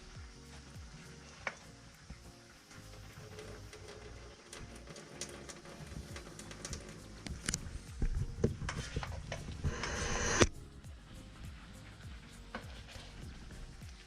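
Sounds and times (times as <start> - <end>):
pans and utensils clicking: 2.7 - 7.6.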